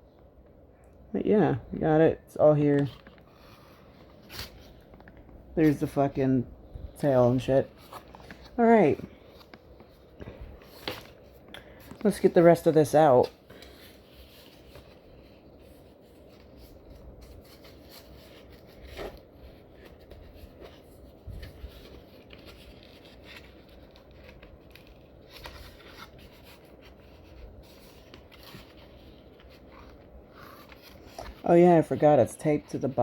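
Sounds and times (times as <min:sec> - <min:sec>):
packaging rubbing and scraping: 0:13.3 - 0:33.0.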